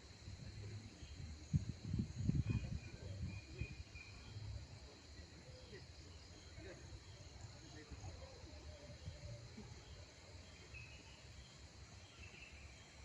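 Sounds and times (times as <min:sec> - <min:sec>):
high insect drone: 0:00.0 - 0:13.0
low thumps on microphone: 0:01.4 - 0:03.7.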